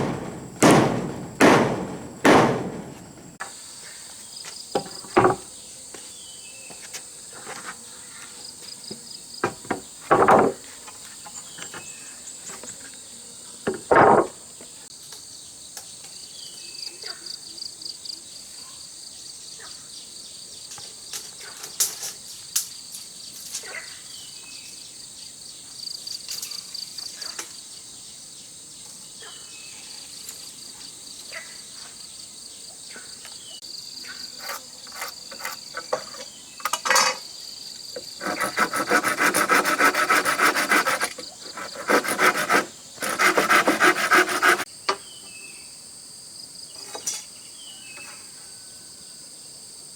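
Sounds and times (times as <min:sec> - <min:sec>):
knocking: 0:00.0 - 0:03.4, 0:38.2 - 0:44.7
insects chirring: 0:00.0 - 0:07.4, 0:20.2 - 0:48.2.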